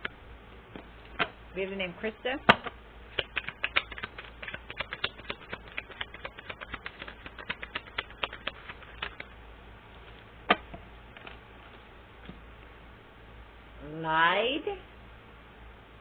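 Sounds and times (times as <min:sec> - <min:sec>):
sharp card snap: 0:02.5 - 0:09.3
cards being shuffled: 0:02.5 - 0:09.4.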